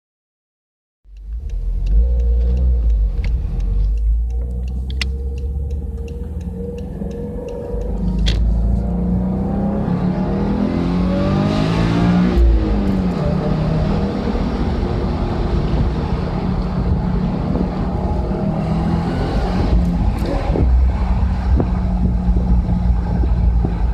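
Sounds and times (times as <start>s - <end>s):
faint regular ticking: 1.1s - 9.1s
car engine accelerating: 1.1s - 23.9s.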